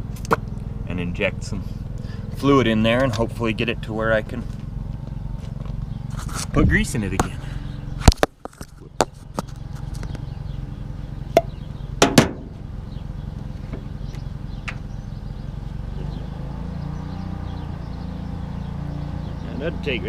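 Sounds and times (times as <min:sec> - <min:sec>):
low machinery hum: 0:00.0 - 0:20.0.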